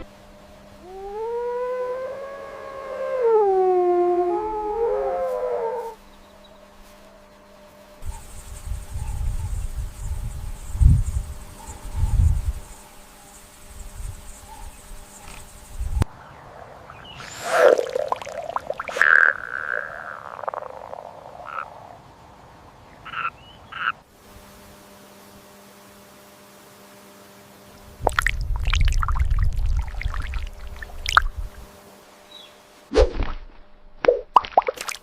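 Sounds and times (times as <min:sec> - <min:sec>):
frogs croaking: 0:00.0 - 0:24.1, 0:28.0 - 0:31.6.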